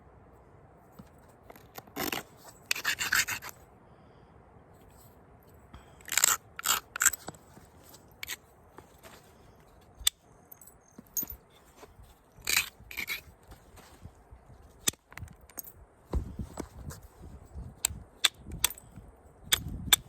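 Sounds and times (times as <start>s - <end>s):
antler clicking and tapping on stone: 17.8s - 20.0s.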